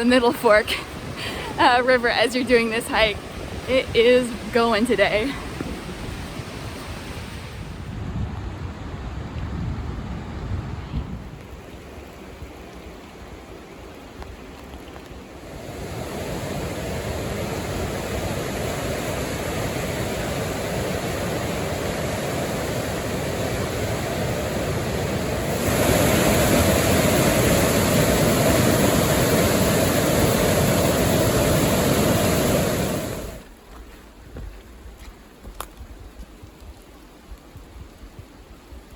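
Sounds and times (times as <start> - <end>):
river rushing: 0.0 - 7.8, 11.6 - 34.2.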